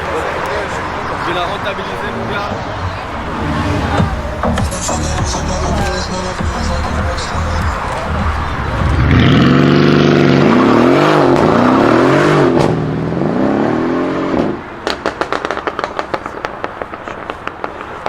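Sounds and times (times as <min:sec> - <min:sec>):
car engine revving: 0:00.0 - 0:17.6
exhaust crackles and pops: 0:01.9 - 0:13.2, 0:14.3 - 0:18.0.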